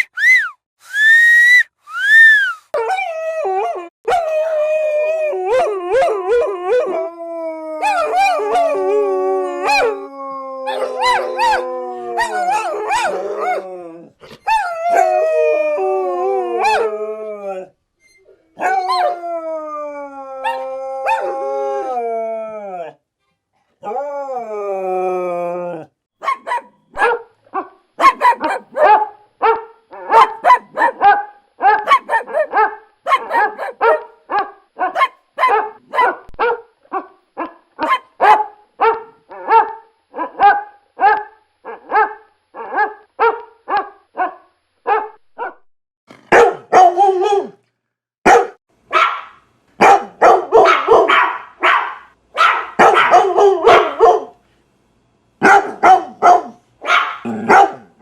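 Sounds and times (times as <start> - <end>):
dog barking: 26.2 - 45.6, 46.3 - 47.6, 48.2 - 54.4, 55.4 - 58.0.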